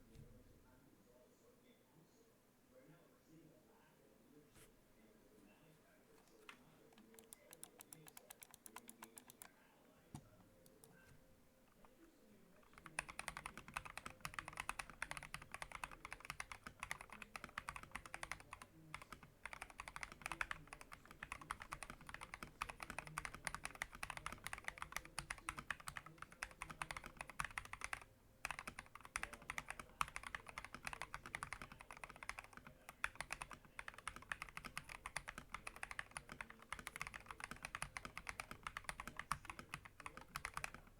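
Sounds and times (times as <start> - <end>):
mechanical keyboard typing: 6.9 - 9.5, 12.6 - 40.9.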